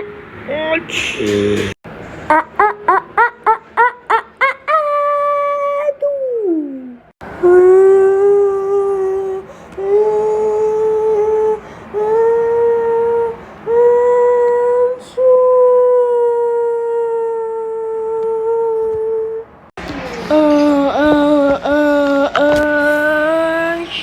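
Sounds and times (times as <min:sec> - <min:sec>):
person breathing: 0:11.6 - 0:12.1.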